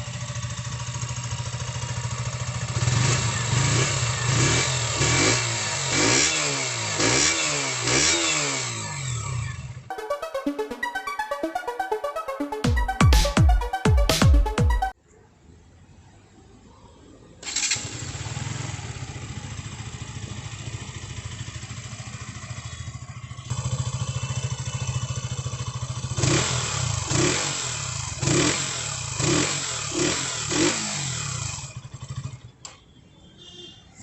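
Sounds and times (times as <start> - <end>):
motorcycle idling and revving: 0.0 - 9.9, 17.4 - 33.7.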